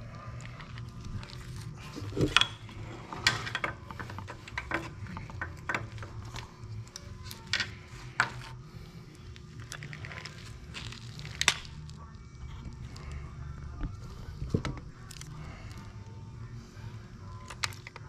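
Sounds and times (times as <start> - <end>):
tools and small parts clattering: 0.7 - 8.6.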